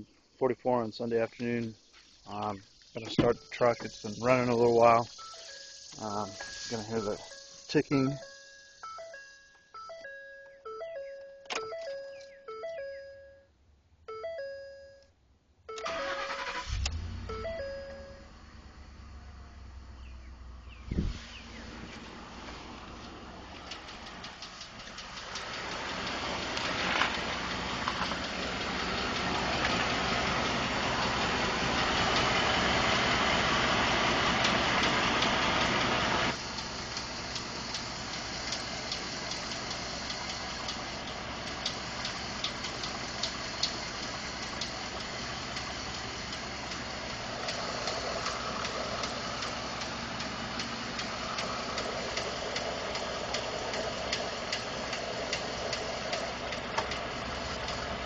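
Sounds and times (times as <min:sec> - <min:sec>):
rapid engine ticking: 0:00.5 - 0:09.1, 0:21.5 - 0:58.0
engine idling: 0:00.5 - 0:09.2, 0:15.8 - 0:58.0.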